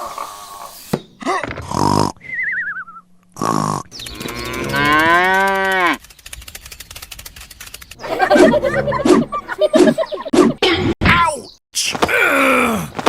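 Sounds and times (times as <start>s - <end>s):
cow mooing: 4.1s - 6.0s, 8.1s - 9.1s.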